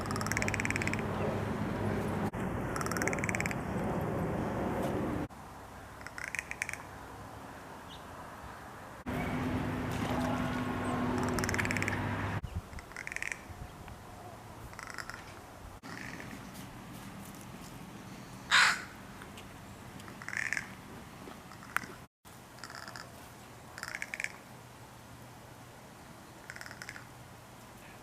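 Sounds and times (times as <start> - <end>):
crow rattle call: 0.0 - 1.0, 2.8 - 3.6, 6.0 - 6.9, 11.1 - 12.1, 12.7 - 13.5, 14.7 - 16.3, 18.5 - 18.9, 20.1 - 20.7, 21.5 - 22.0, 22.6 - 23.1, 23.8 - 24.4, 26.4 - 27.1.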